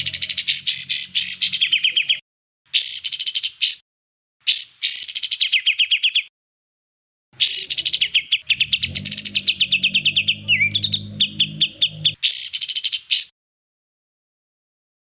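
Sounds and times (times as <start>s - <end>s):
low hum: 0.0s - 2.2s, 7.4s - 12.2s.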